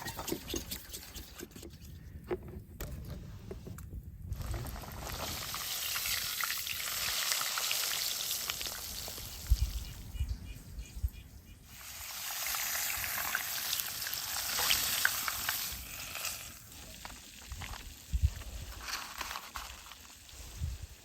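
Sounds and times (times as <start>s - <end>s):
food sizzling in hot oil: 4.6s - 9.8s, 11.8s - 17.0s.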